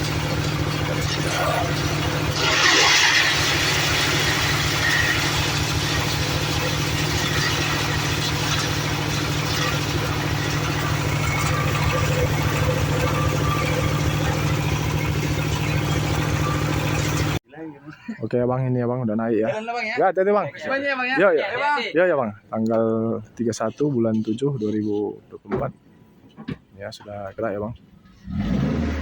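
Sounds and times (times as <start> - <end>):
engine idling: 0.0 - 17.4.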